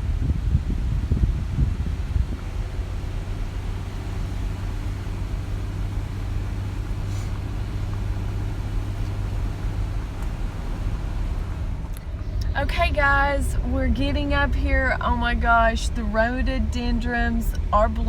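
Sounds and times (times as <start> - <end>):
car engine drone: 0.0 - 18.0
road noise: 0.0 - 18.0.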